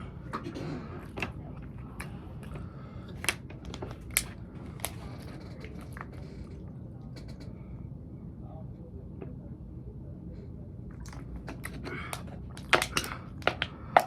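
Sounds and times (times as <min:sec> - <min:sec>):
crunches of chewing food: 0:00.0 - 0:07.5, 0:10.9 - 0:14.0
low steady hum: 0:00.0 - 0:14.0.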